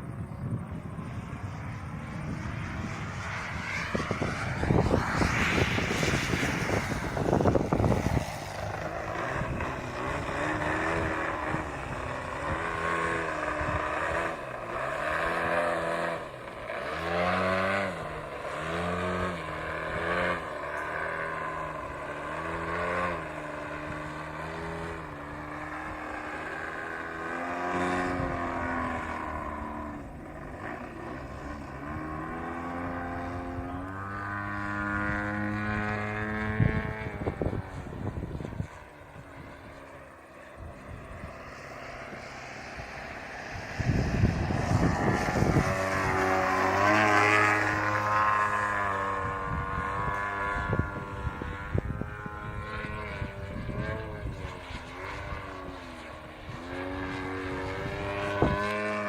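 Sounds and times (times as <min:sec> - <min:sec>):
rush of noise: 0:00.0 - 0:52.0
model plane engine: 0:00.0 - 0:59.0.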